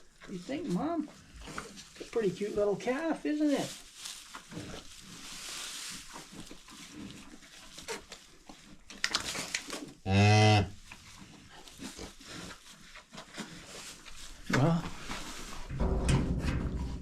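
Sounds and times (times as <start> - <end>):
rustling and shuffling: 0.0 - 10.0, 10.7 - 17.0
cow mooing: 10.1 - 10.7.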